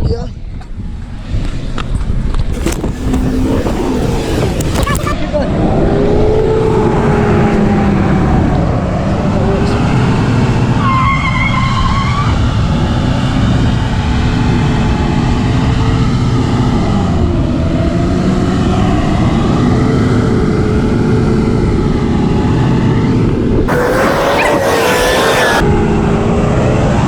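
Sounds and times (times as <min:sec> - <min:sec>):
loud rush of noise: 0:02.6 - 0:05.2, 0:23.7 - 0:25.6.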